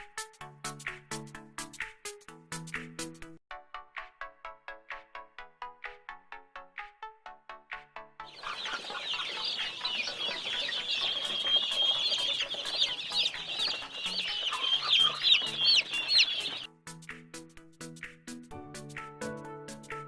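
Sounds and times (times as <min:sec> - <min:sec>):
plinking background music: 0:03.9 - 0:17.4
chicks peeping: 0:08.3 - 0:16.7.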